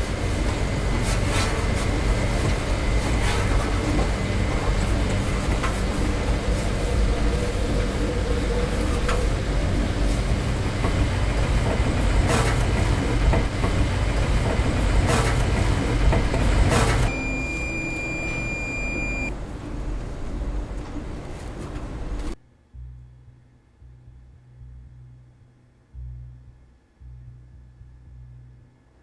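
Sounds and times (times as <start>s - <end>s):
vehicle rumble with sharp clacks: 0.0s - 17.1s
high-pitched beep: 17.1s - 19.3s.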